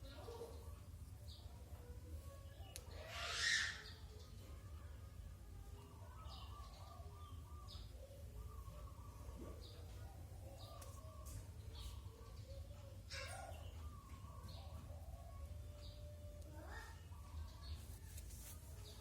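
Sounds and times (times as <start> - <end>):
faint bird chirps: 0.0 - 4.9.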